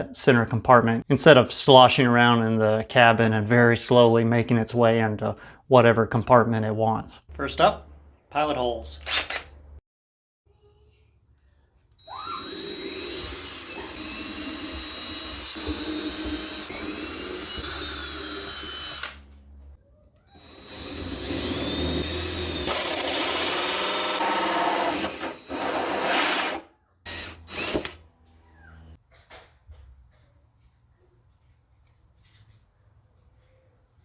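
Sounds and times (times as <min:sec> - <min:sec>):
power drill boring: 0:11.9 - 0:19.2, 0:20.3 - 0:28.0.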